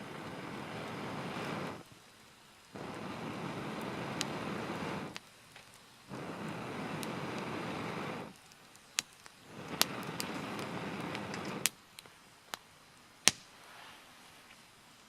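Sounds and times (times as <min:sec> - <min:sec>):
wood fire crackling: 0:00.0 - 0:15.0.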